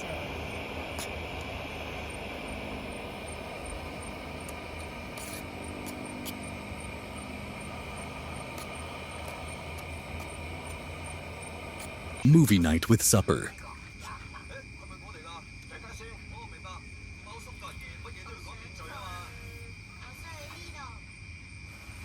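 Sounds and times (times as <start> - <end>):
low droning hum: 0.0 - 12.3
high insect trill: 0.0 - 22.0.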